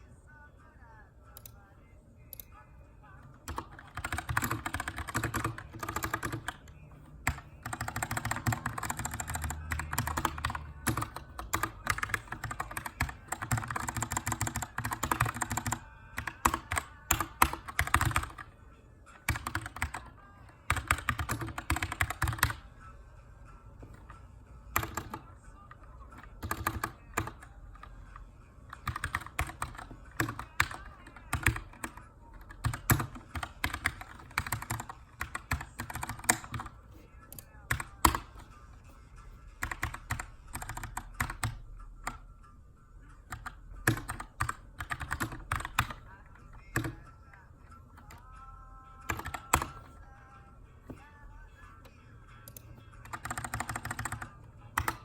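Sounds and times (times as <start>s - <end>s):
mechanical keyboard typing: 3.3s - 18.5s, 19.2s - 22.7s, 23.8s - 28.0s, 28.7s - 38.5s, 39.6s - 42.2s, 43.2s - 47.2s, 48.0s - 48.4s, 49.0s - 49.9s, 52.5s - 55.0s.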